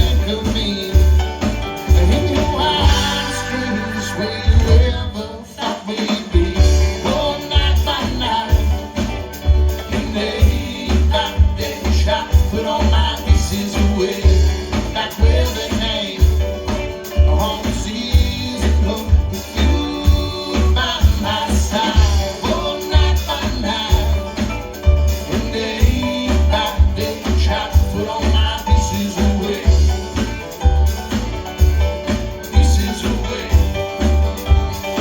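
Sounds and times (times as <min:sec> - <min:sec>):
live rock band playing: 0:00.0 - 0:35.0.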